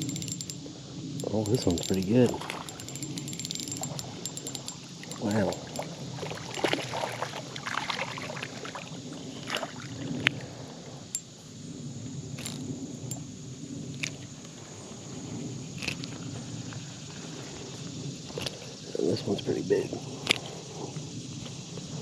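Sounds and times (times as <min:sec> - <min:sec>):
fishing tackle clicks and knocks: 0:00.0 - 0:00.6, 0:01.2 - 0:07.0, 0:12.4 - 0:13.2.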